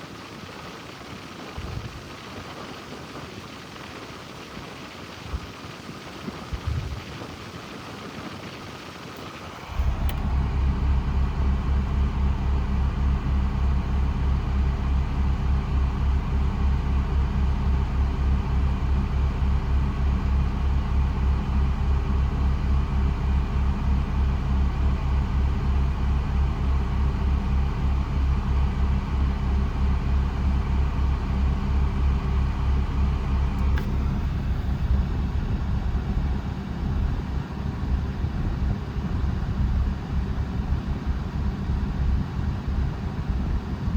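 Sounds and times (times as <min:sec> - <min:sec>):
air blowing from vents: 0:05.2 - 0:17.3, 0:25.5 - 0:43.9
car engine rumble inside cabin: 0:09.2 - 0:43.9.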